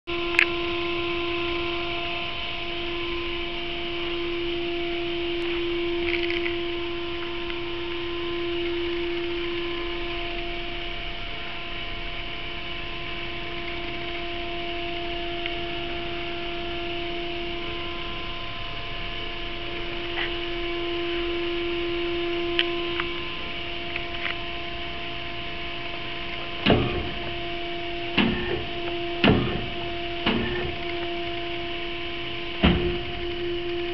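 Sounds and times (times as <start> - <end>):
sharp knocks: 28.2 - 30.8, 32.6 - 33.1.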